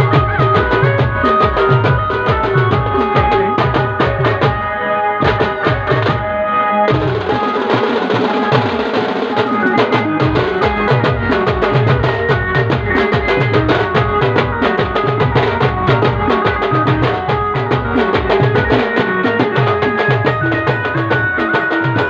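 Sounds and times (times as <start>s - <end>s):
fast dance drumming: 0.0s - 6.3s, 6.9s - 22.0s
held melody line: 0.0s - 22.0s.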